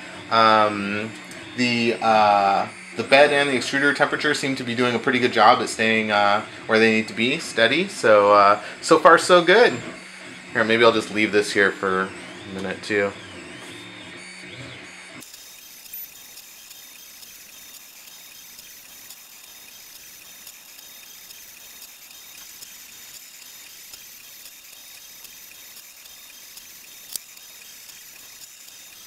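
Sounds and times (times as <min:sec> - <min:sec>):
printer mechanical whir: 0:00.0 - 0:29.0
sharp click: 0:15.2 - 0:29.0.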